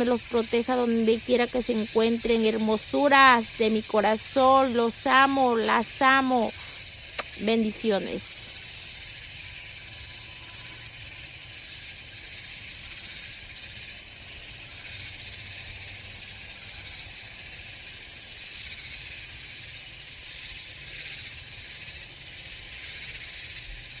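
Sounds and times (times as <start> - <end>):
cicadas buzzing: 0.0 - 24.0.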